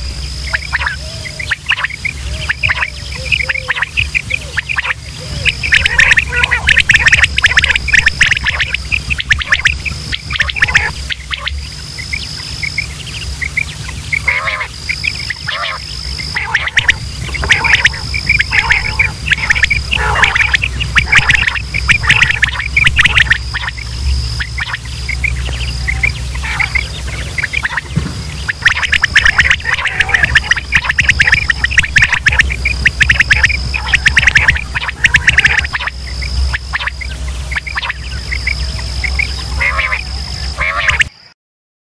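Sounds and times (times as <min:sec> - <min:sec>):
quail calling: 0:00.0 - 0:41.2
thin high tone: 0:00.0 - 0:41.2
steady low hum: 0:00.0 - 0:41.4.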